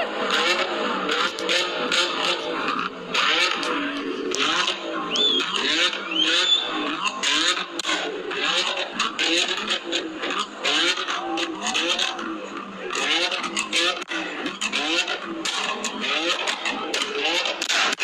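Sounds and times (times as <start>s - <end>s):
car engine revving: 0.0s - 18.0s
short high squeals: 5.1s - 7.1s.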